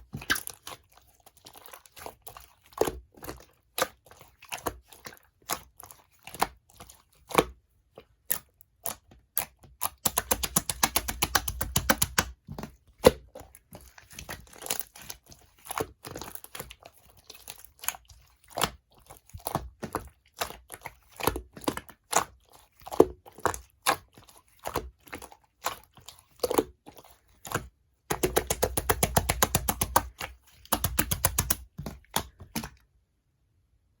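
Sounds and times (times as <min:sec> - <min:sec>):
rapid clicking of slime: 0:00.0 - 0:32.8
slime squished with pops: 0:08.2 - 0:13.3, 0:27.4 - 0:32.8.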